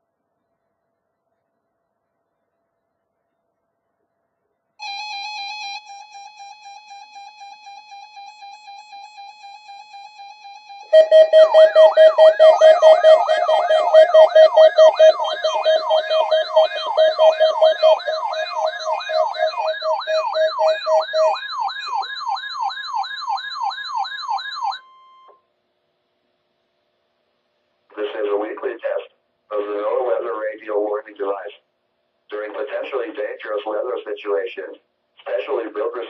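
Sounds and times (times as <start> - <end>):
warbling electronic tone: 4.8 - 23.0
pulsing beep: 4.8 - 24.0
electronic siren alarm whooping: 4.8 - 25.3.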